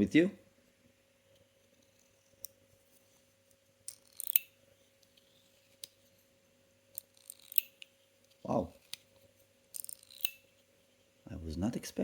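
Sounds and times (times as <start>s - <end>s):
metal fidget toy clicking: 3.9s - 4.5s, 7.0s - 7.9s, 9.8s - 10.4s.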